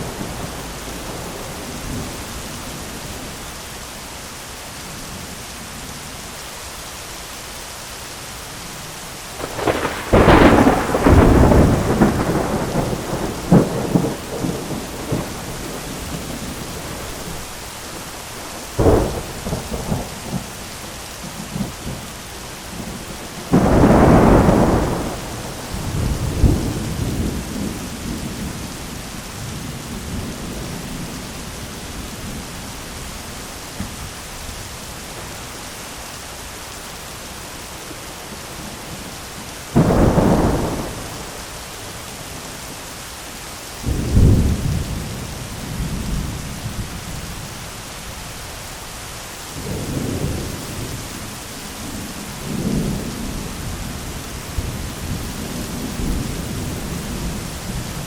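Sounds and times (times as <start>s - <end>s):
heavy rain on an umbrella: 0.0s - 58.0s
sharp thunder crack: 9.4s - 17.4s, 39.8s - 41.4s
rolling thunder rumble: 9.4s - 20.6s, 22.7s - 35.5s, 39.7s - 41.9s, 43.8s - 47.6s.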